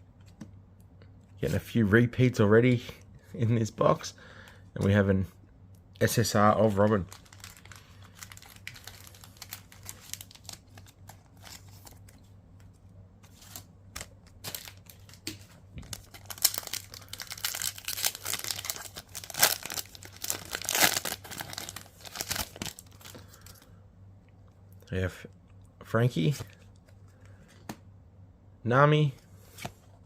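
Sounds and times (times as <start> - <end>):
wrapper crinkling and tearing: 6.7 - 12.1, 13.4 - 23.6.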